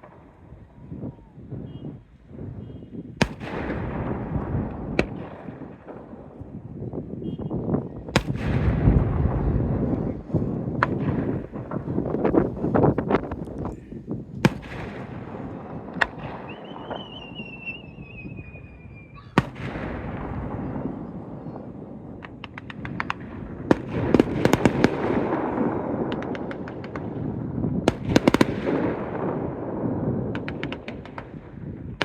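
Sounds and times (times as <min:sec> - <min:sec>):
fireworks bangs: 0:00.0 - 0:32.0
firework whistle: 0:16.3 - 0:19.4.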